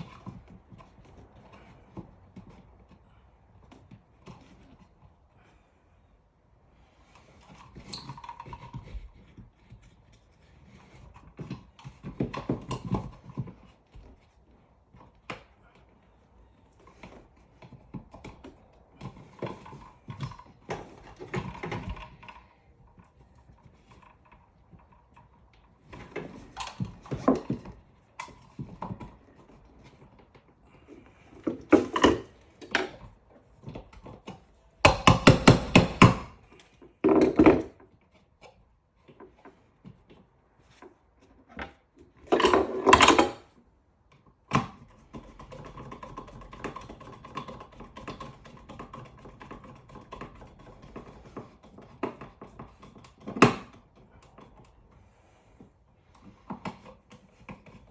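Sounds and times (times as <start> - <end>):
knocking and scraping on outlet box: 31.3 - 37.9.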